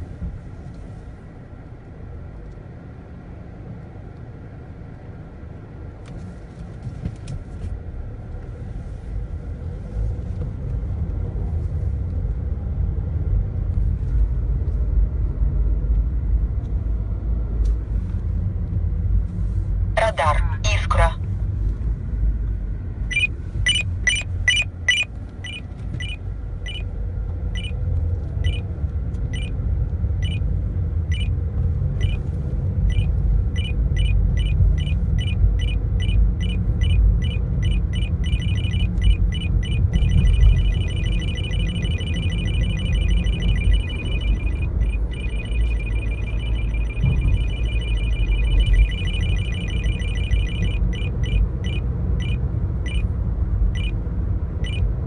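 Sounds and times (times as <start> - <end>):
car cabin rumble: 20.0 - 54.0
radar detector beeping: 23.1 - 26.9, 27.6 - 27.8, 28.4 - 28.6, 29.3 - 29.6, 30.2 - 30.4, 31.1 - 31.4, 32.0 - 32.2, 32.9 - 53.1, 53.8 - 54.0, 54.6 - 54.9.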